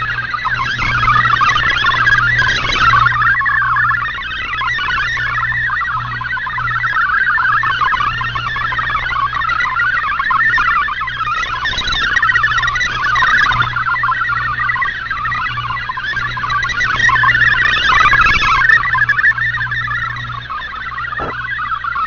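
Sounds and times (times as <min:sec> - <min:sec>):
warbling radio data tones: 0:00.0 - 0:22.0
steady low hum: 0:12.2 - 0:22.0.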